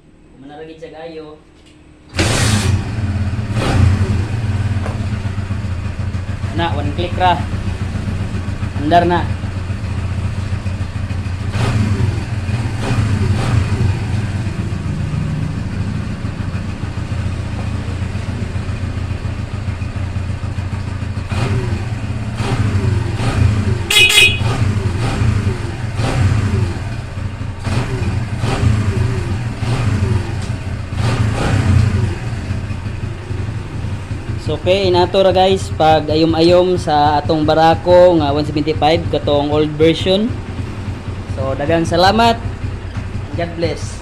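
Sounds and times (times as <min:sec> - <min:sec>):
motorcycle engine idling: 0:03.0 - 0:44.0.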